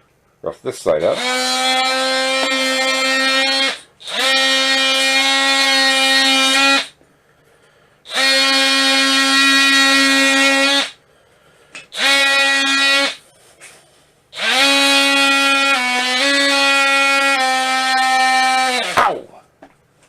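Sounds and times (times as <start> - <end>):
power tool motor whine: 1.1 - 6.9, 8.1 - 11.0, 12.0 - 13.2, 14.4 - 19.0.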